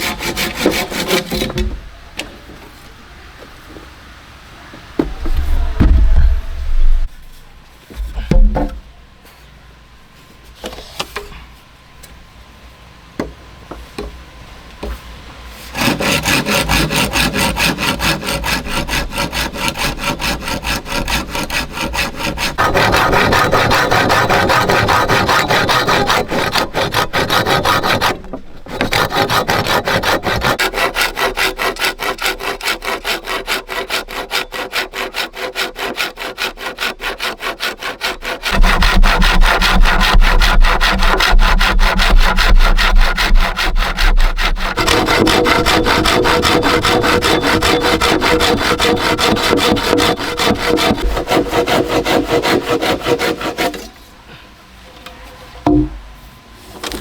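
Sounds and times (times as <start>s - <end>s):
hand saw cutting bamboo: 0.0s - 1.8s, 15.6s - 54.0s.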